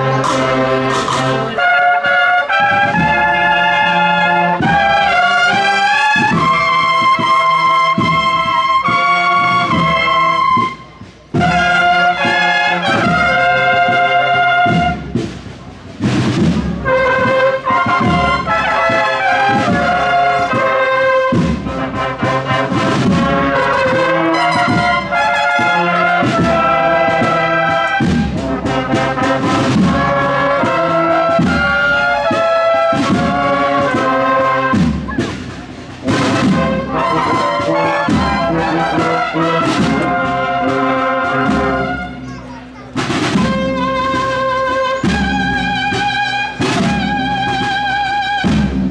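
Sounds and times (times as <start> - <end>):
brass band playing a march: 0.0 - 48.9.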